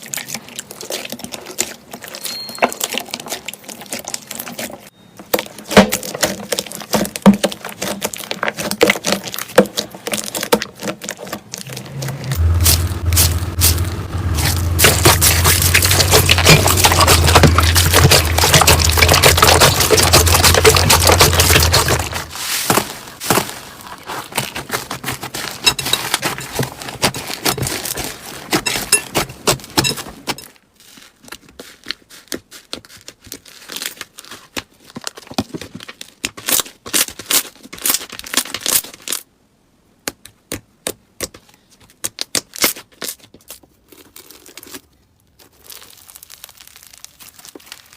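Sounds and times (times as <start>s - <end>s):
slime crackling and popping: 5.9s - 28.8s, 45.4s - 47.9s
low hum: 11.6s - 22.4s.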